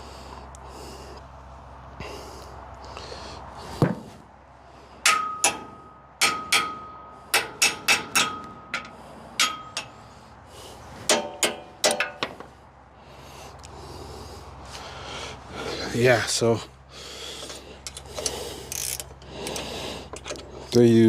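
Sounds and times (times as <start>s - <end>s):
hand tools tapping metal: 5.0s - 10.0s, 11.0s - 12.5s, 17.4s - 20.8s
metal clanks with ringing: 5.0s - 10.0s, 11.1s - 12.4s.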